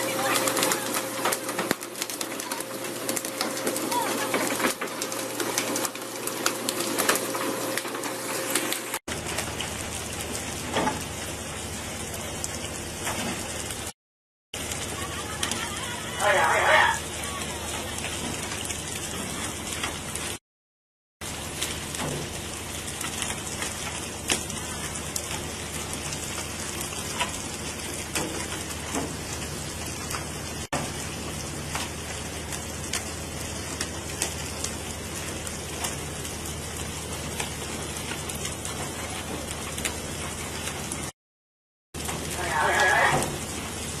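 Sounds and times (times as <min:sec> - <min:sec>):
water spattering: 0:14.6 - 0:20.4, 0:21.2 - 0:41.1, 0:42.0 - 0:44.0.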